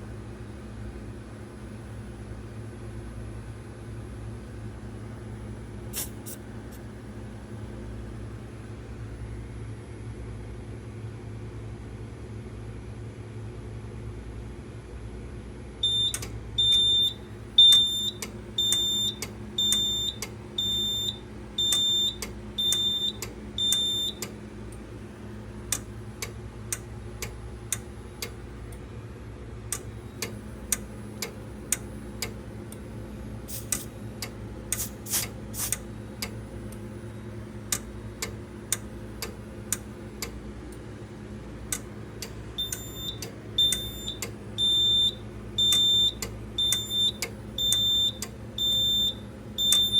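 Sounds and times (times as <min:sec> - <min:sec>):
steady low hum: 0:00.0 - 0:49.9
fire alarm beeping: 0:15.8 - 0:24.2, 0:42.6 - 0:49.9
scattered clicks: 0:25.7 - 0:28.8, 0:37.7 - 0:40.8, 0:41.7 - 0:44.4
short bursts of hiss: 0:34.8 - 0:35.8.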